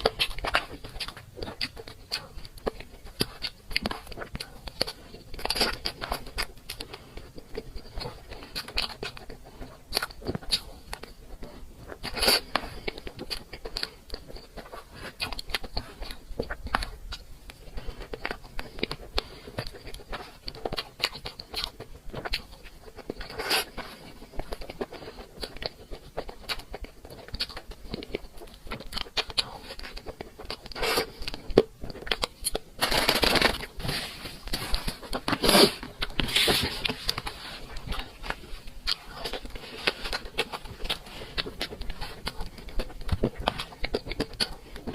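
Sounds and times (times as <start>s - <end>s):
chewing cake: 0.0s - 44.9s
scraping or rustling: 32.8s - 43.7s.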